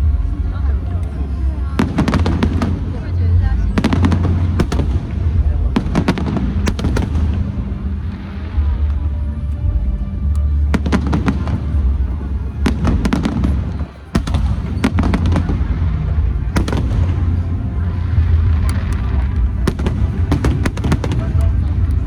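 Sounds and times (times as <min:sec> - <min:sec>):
fireworks rumble: 0:00.0 - 0:22.0
fireworks crackling pops: 0:03.7 - 0:08.9, 0:12.6 - 0:22.0.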